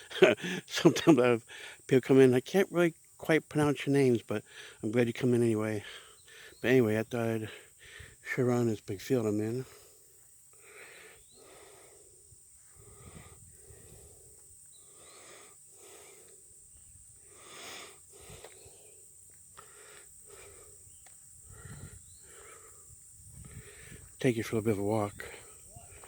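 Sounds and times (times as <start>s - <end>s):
high-pitched insect buzz: 10.5s - 24.2s.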